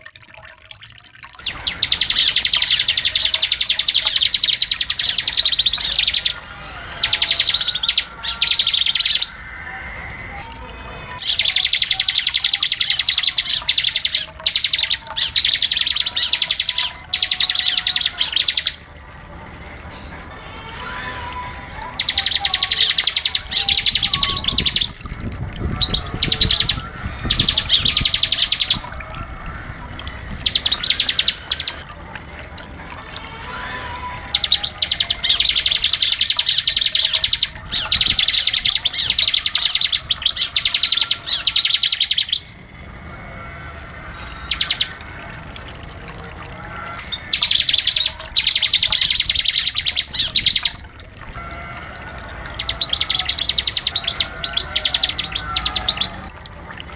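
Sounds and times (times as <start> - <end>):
bird buzzing trill song: 21.8 - 28.9.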